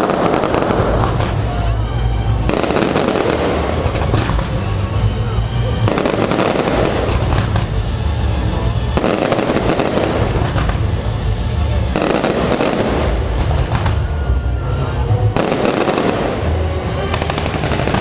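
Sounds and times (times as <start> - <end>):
fireworks booming: 0.0 - 18.0
fireworks crackling: 0.0 - 18.0.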